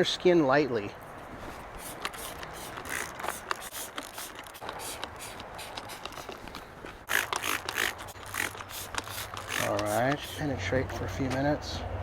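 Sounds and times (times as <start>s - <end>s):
scrubbing strokes on vinyl: 7.5s - 10.5s.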